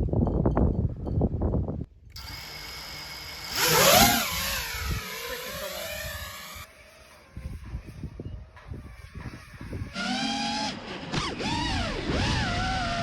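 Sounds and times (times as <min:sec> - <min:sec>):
drone propellers whining: 0:02.1 - 0:08.0, 0:08.8 - 0:13.0.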